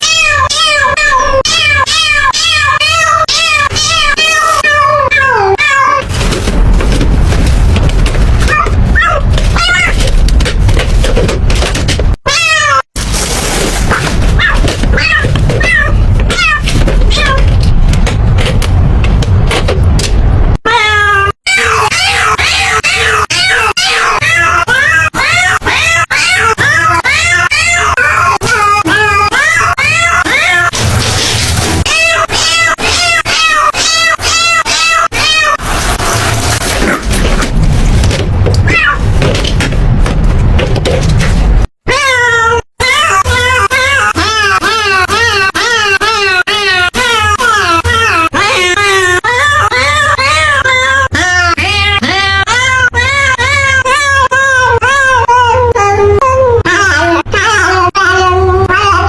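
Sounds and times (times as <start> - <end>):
cat meowing: 0.0 - 6.0, 8.5 - 10.0, 12.3 - 12.9, 13.9 - 17.5, 31.8 - 35.6, 38.7 - 39.1
rough noise with low rumble: 6.0 - 12.2, 30.7 - 32.0, 35.6 - 41.7.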